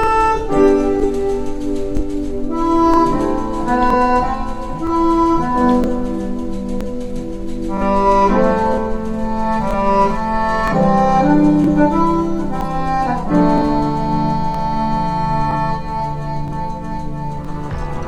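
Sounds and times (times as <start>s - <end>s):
sustained instrumental chords: 15.0s - 18.0s.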